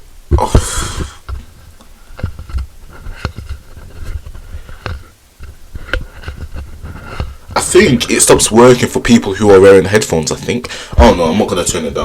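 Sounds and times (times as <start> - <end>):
steady low hum: 0.0 - 12.0
short hiss: 0.3 - 1.3.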